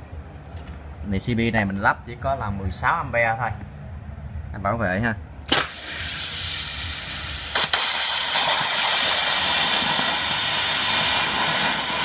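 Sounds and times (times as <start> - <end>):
sharp click: 5.5 - 5.8, 7.5 - 8.7
plasma cutter arc hissing: 5.5 - 12.0.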